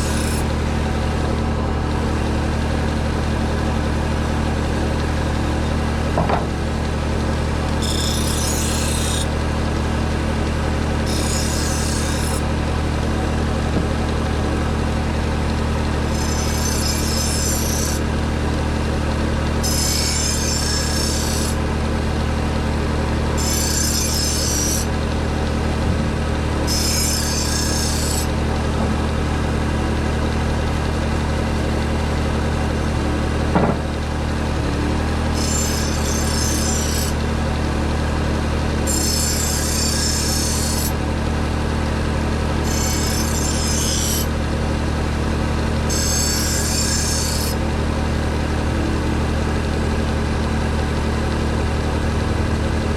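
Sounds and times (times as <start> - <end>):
blade grinding on belt: 0.0 - 0.7, 7.6 - 9.4, 11.0 - 12.5, 16.0 - 18.2, 19.5 - 21.6, 23.4 - 25.0, 25.8 - 28.6, 35.3 - 37.2, 38.8 - 41.0, 42.6 - 44.4, 45.9 - 47.6
belt sharpener motor hum: 0.0 - 1.0, 7.5 - 9.6, 11.0 - 12.6, 15.9 - 21.8, 23.3 - 28.9, 34.6 - 37.3, 38.8 - 41.2, 42.3 - 44.6, 45.8 - 47.7
single knock: 6.2 - 6.6, 33.5 - 33.9.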